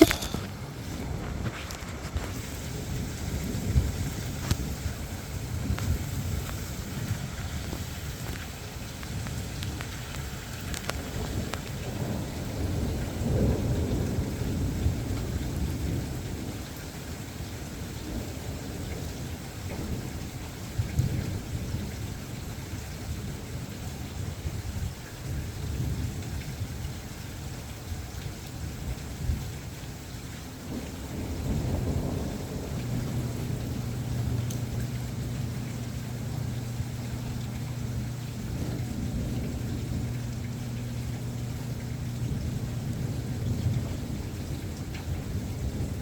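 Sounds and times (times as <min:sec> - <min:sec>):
steady rain: 0:00.0 - 0:46.0
thunder rumbling: 0:11.1 - 0:16.7, 0:28.6 - 0:46.0.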